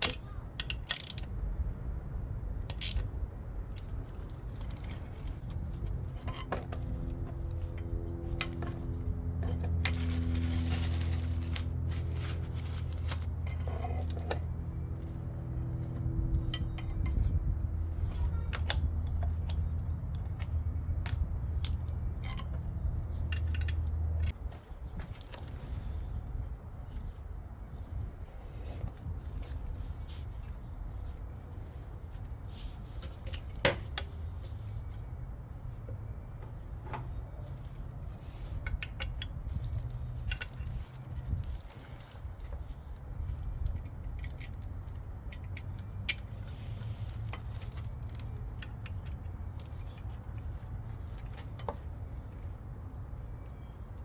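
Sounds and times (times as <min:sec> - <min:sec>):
metal tools clinking: 0:03.7 - 0:14.5, 0:16.3 - 0:20.4, 0:21.1 - 0:24.4, 0:43.4 - 0:52.5.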